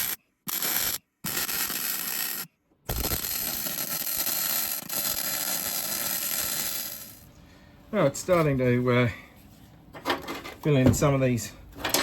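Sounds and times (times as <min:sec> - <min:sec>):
welder crackling and hissing: 0:00.0 - 0:07.3.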